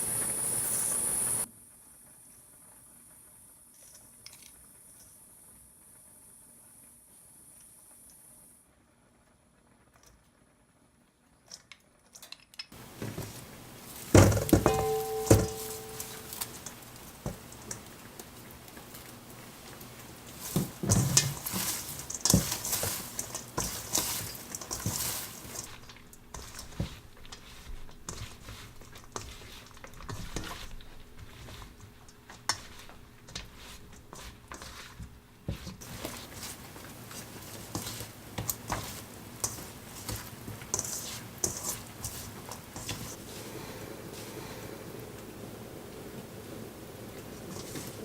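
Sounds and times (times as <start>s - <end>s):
utensils clinking against dish: 14.2s - 17.8s.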